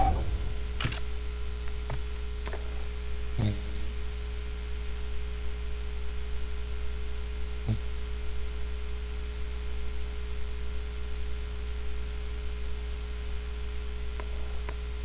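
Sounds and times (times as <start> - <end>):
low electrical hum: 0.0 - 1.2.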